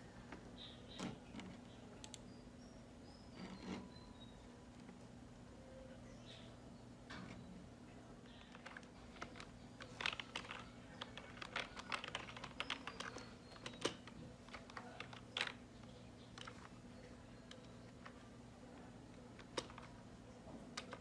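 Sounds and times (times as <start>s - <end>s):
low electrical hum: 0.0s - 21.0s
small hard parts clicking: 8.3s - 16.8s, 19.4s - 20.0s.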